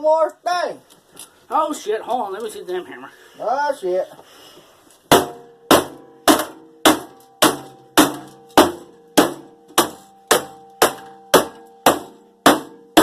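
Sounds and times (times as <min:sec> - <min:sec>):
hammer beating on metal: 0:05.1 - 0:13.0.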